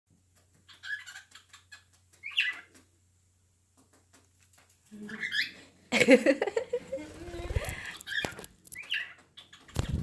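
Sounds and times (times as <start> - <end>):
cockatiel chirping and clicking: 0.3 - 3.0, 3.7 - 5.5, 7.6 - 10.0.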